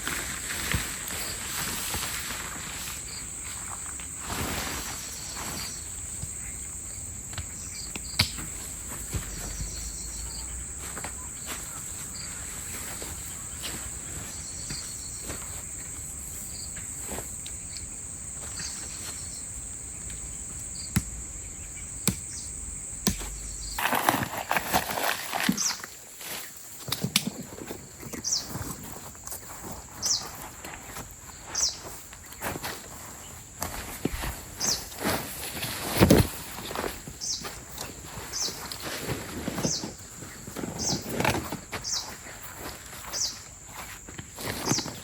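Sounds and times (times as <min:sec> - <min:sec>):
high-pitched insect chorus: 0:00.0 - 0:45.0.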